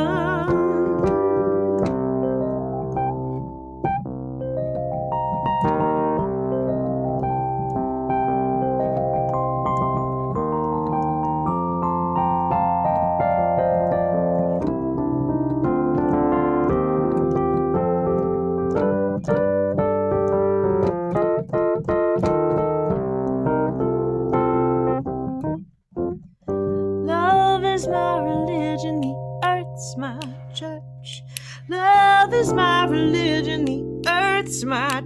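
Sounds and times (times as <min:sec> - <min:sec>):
electric piano chords: 0:00.0 - 0:35.0.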